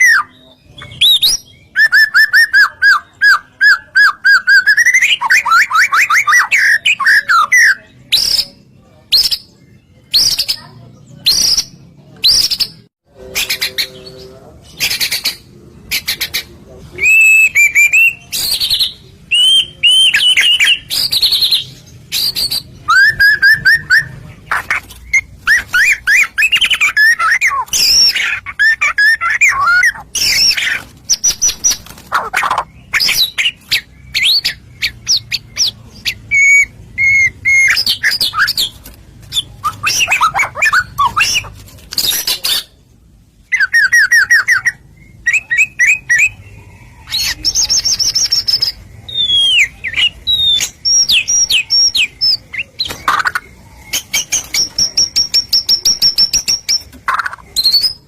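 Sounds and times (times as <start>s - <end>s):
bird singing whistled song: 0.0s - 9.5s, 17.0s - 24.2s, 32.6s - 41.5s, 43.5s - 58.0s.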